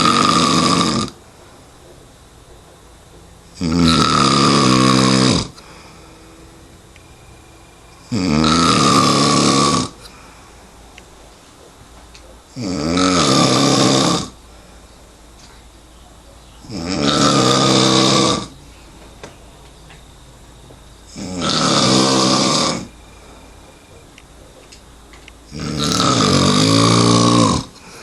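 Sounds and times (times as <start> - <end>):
man snoring loudly: 0.0 - 1.2, 3.5 - 6.5, 8.0 - 10.1, 12.5 - 14.4, 16.6 - 18.6, 21.1 - 23.0, 25.5 - 27.9.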